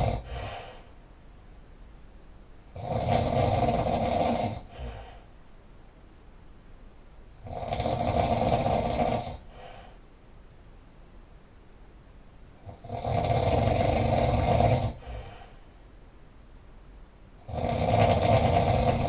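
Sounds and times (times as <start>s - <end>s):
loud snoring: 0.0s - 0.8s, 2.7s - 5.2s, 7.4s - 9.8s, 12.6s - 15.5s, 17.4s - 19.0s.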